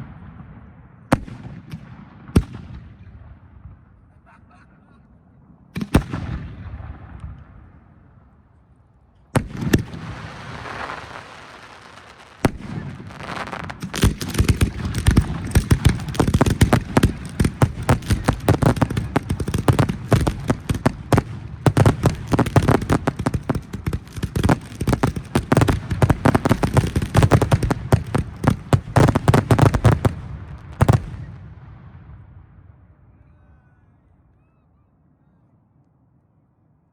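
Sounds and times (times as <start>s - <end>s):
firework shells launching: 9.4s - 30.2s
rapid firework bangs: 9.4s - 31.8s
firework bursts with crackling tails: 9.4s - 32.7s.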